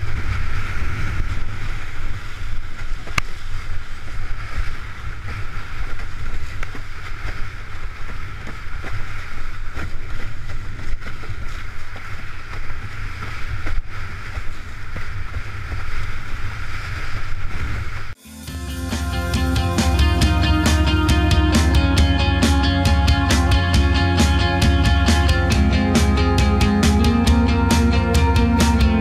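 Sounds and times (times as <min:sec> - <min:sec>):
wind buffeting microphone: 0:00.0 - 0:18.2
guitar music: 0:18.2 - 0:29.0.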